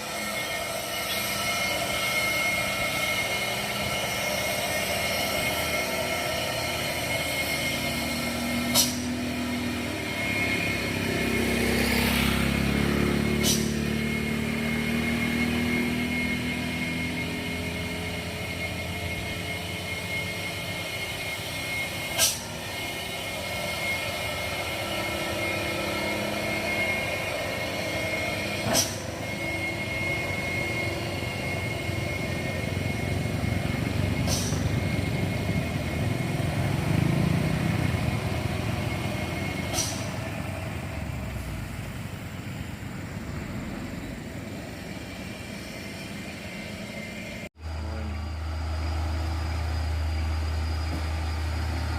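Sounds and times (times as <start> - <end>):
high whine: 0.0 - 51.9
truck engine under load: 0.0 - 51.9.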